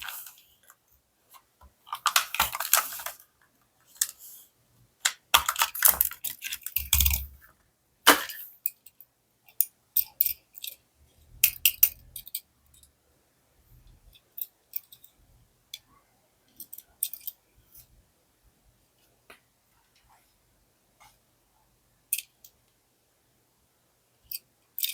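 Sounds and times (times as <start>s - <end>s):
packaging crinkling: 1.9s - 3.2s
plastic packaging clicks and taps: 1.9s - 3.2s, 5.0s - 7.3s.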